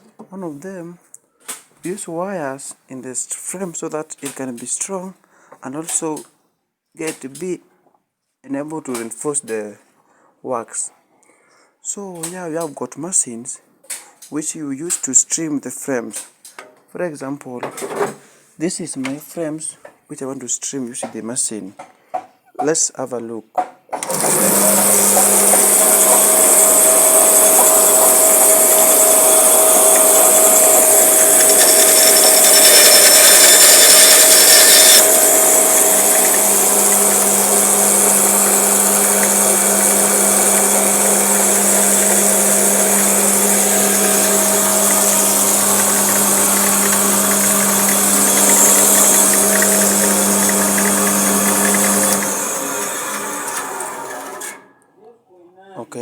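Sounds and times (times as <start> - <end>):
electric motor humming: 24.0 - 54.4.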